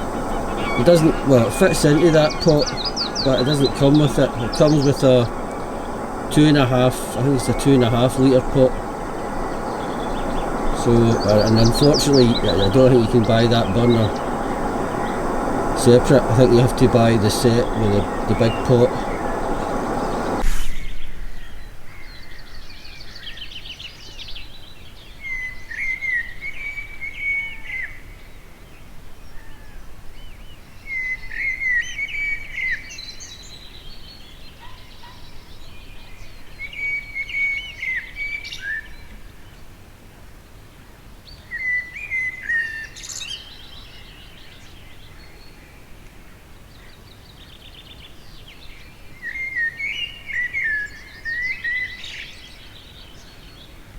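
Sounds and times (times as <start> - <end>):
high thin bird trills: 0.0 - 20.4
songbirds warbling: 0.0 - 20.4.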